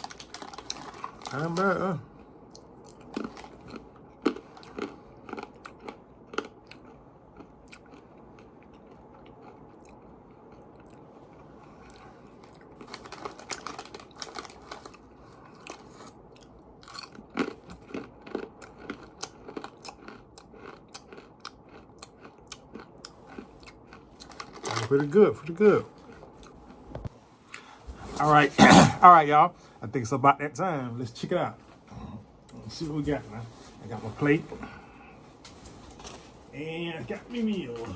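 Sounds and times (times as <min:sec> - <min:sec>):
crunchy chewing of chips: 0:00.0 - 0:27.8.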